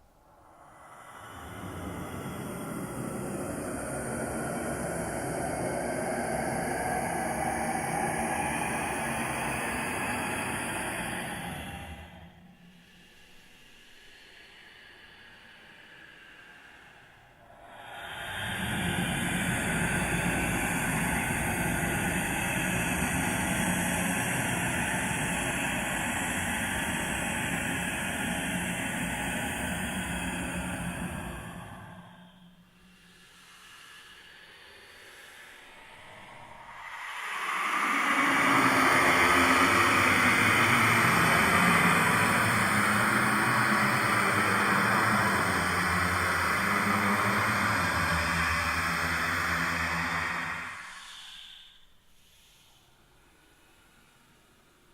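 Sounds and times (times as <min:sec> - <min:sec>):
noisy rumbling drone: 0:00.0 - 0:12.6, 0:17.8 - 0:33.6, 0:34.4 - 0:51.8
low hum: 0:35.6 - 0:51.1.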